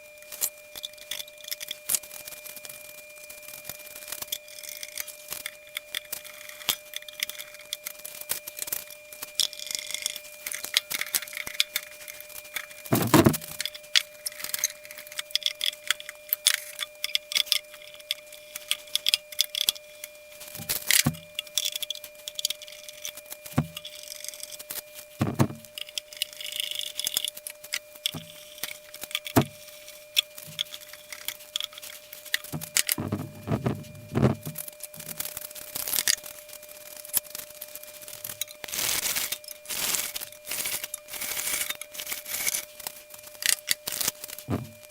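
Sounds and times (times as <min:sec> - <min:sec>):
faint steady tone: 0:00.0 - 0:35.2.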